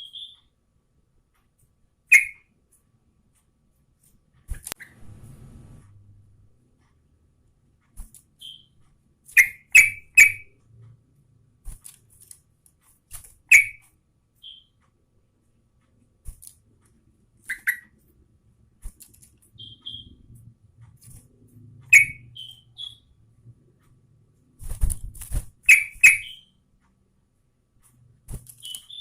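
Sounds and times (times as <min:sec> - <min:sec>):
thin high chirps: 0:00.0 - 0:00.4, 0:02.1 - 0:02.5, 0:08.4 - 0:10.5, 0:14.4 - 0:14.8, 0:19.5 - 0:20.3, 0:21.9 - 0:23.1, 0:25.6 - 0:26.6, 0:28.6 - 0:29.0
faint low hum: 0:00.0 - 0:29.0
bird calling sharp notes: 0:02.1 - 0:02.4, 0:19.6 - 0:20.2, 0:21.9 - 0:23.1.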